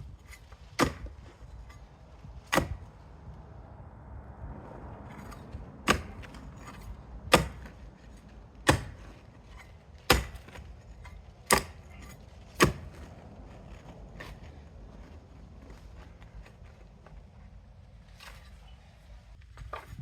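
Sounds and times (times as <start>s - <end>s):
spade chopping into ground: 0.2s - 1.8s, 2.5s - 2.9s, 5.2s - 14.6s.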